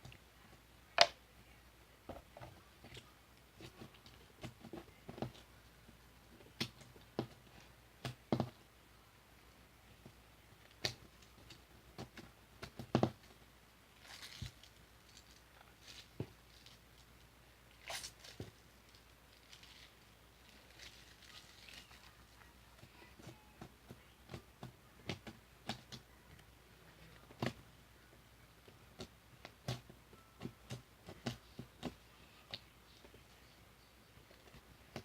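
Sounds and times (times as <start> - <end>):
slime squelching by hand: 17.7 - 18.4
sticky slime smears: 17.7 - 26.1.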